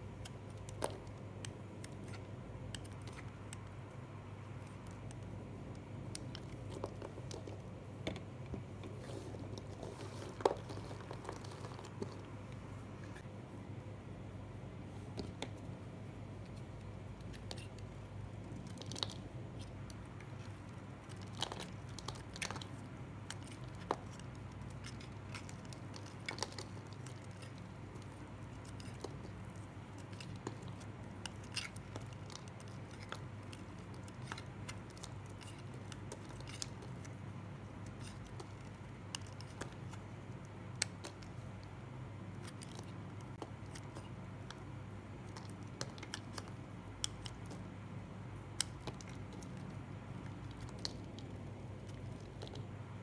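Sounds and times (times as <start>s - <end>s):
steady low hum: 0.0s - 53.0s
blade crunching through soap: 16.6s - 47.8s.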